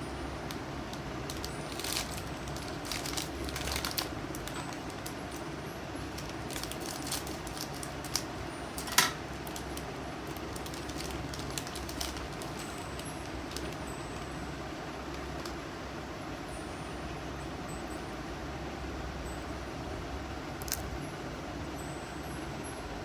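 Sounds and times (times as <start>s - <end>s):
low background hum: 0.0s - 23.0s
plastic wrapper crinkling: 0.5s - 14.4s, 15.0s - 15.6s.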